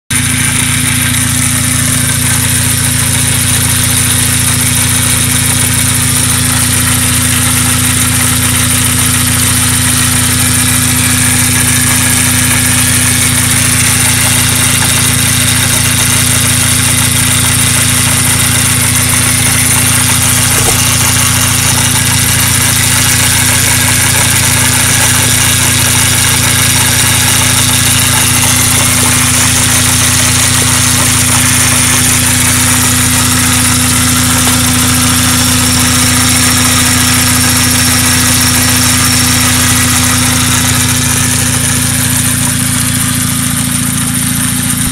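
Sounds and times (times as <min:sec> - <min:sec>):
high engine whine: 0:00.1 - 0:44.9
rotary engine idling: 0:00.1 - 0:44.9.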